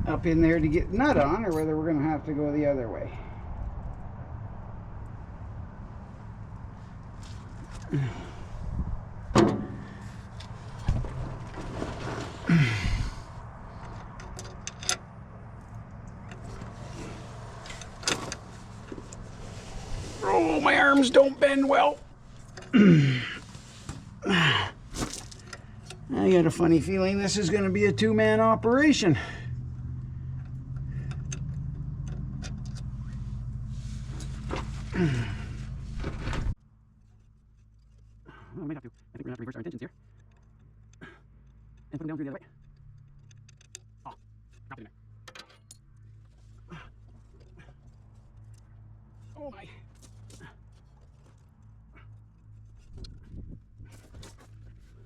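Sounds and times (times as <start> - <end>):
metal bolts and tools clinking: 13.8 - 17.0, 39.9 - 51.4.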